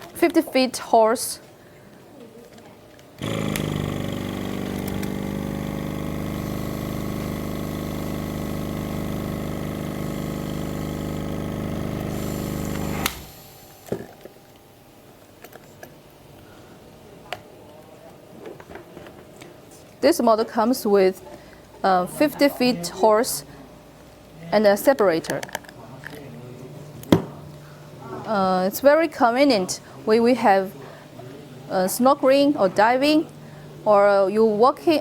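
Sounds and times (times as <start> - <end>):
air compressor running: 3.2 - 14.6.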